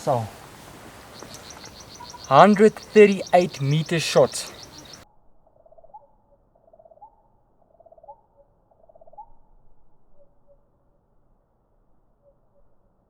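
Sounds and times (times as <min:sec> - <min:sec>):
faint muffled bird calling: 0:00.0 - 0:05.0.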